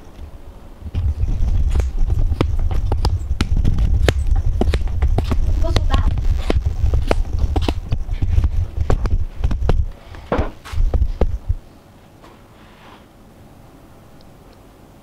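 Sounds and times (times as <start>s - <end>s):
low rumble: 0.6s - 10.0s, 10.8s - 11.7s
handling knocks and thumps: 0.9s - 11.6s.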